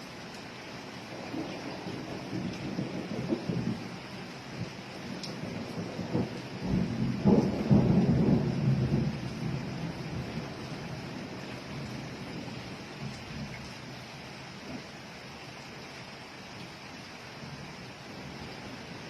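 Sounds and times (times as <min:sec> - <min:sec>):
steady rain: 0:00.0 - 0:19.0
thunder rumbling: 0:01.0 - 0:14.0.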